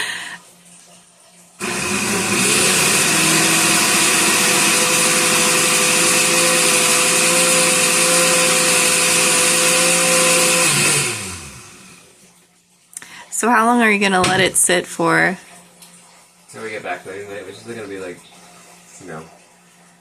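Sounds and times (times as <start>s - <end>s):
blender motor running: 1.6s - 12.2s.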